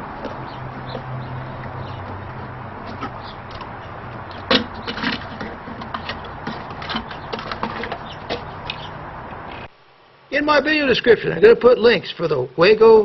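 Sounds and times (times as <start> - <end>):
wires scraping and clicking: 2.1 - 8.9.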